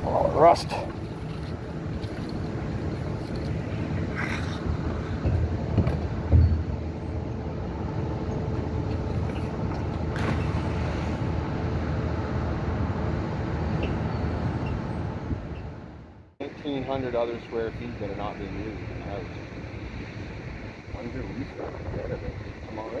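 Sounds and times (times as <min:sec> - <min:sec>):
dull thumps: 0:04.6 - 0:07.2.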